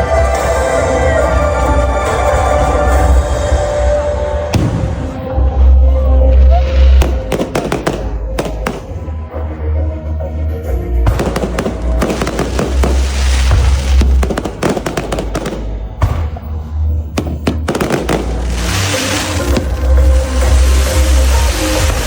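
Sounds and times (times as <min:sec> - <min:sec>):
fireworks bangs and crackles: 0:04.4 - 0:05.4, 0:06.9 - 0:09.2, 0:11.1 - 0:22.0
loud music with heavy bass: 0:17.6 - 0:22.0.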